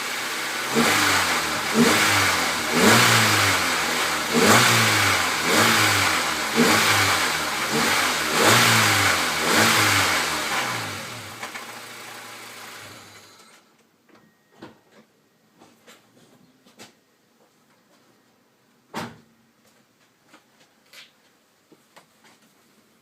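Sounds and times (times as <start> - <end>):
car engine revving: 0.0 - 13.4.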